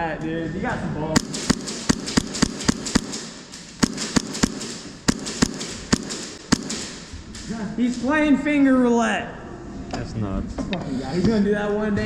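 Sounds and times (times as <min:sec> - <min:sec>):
airsoft gun shots: 0:01.2 - 0:07.3.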